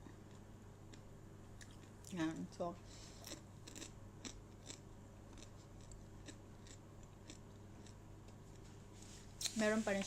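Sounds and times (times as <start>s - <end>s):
crunchy chewing: 3.2s - 8.7s.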